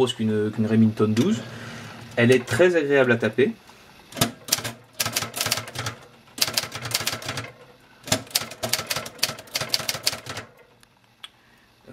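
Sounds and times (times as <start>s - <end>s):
typewriter key strikes: 4.2s - 7.5s, 8.1s - 10.5s.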